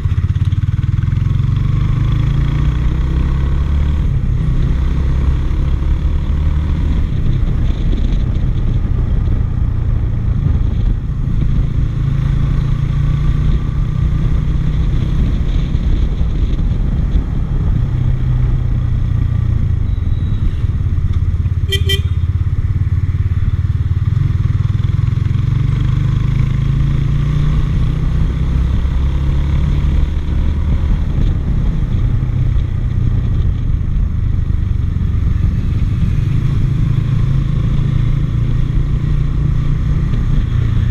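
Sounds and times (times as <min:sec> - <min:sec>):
motorbike engine rumble: 0:00.0 - 0:40.9
wind noise: 0:01.6 - 0:40.9
horn beep: 0:21.6 - 0:22.2.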